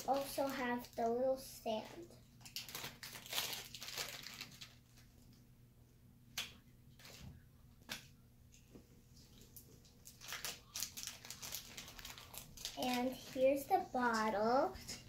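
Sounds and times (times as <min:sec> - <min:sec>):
packaging rustling: 0:02.4 - 0:05.2, 0:09.3 - 0:14.6.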